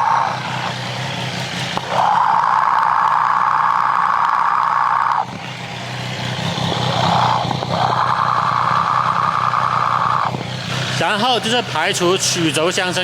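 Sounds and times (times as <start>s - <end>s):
engine idling through stethoscope: 0.0s - 13.0s.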